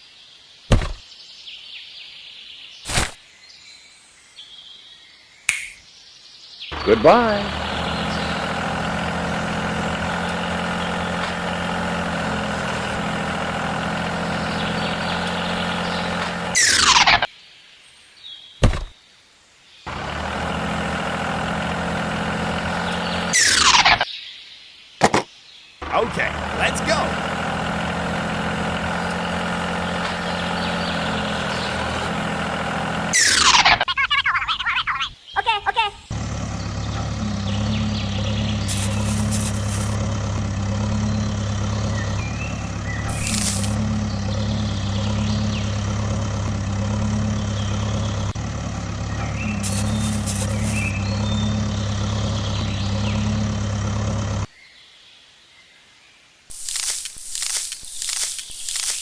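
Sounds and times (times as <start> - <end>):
truck engine idling: 6.8 - 16.6, 19.9 - 23.4, 25.8 - 33.2, 36.1 - 54.5.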